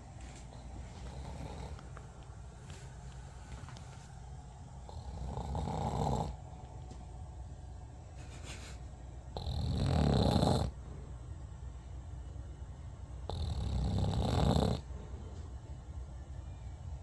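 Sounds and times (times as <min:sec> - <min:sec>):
deep snoring: 0:01.0 - 0:01.9, 0:04.9 - 0:06.4, 0:09.4 - 0:10.8, 0:13.3 - 0:14.9.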